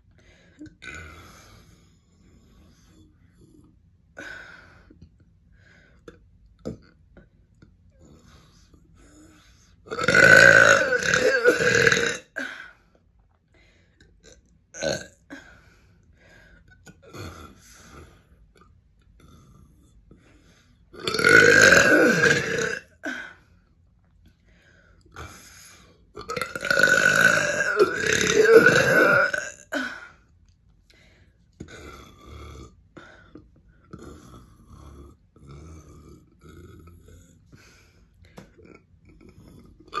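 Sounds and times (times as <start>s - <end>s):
person burping: 9.9s - 12.5s, 14.2s - 15.2s, 21.0s - 23.2s, 26.2s - 30.0s, 38.6s - 40.0s.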